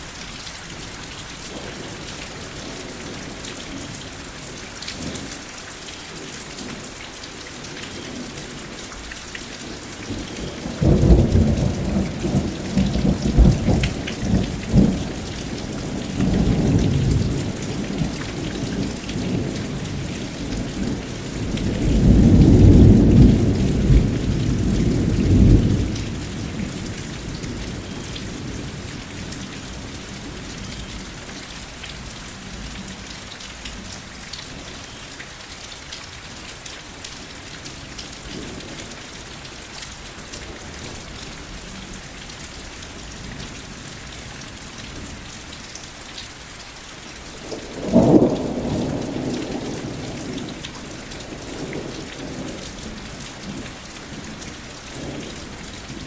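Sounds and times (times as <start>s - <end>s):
rain hissing: 0.0s - 56.0s
rolling thunder: 10.2s - 30.7s, 47.5s - 54.3s.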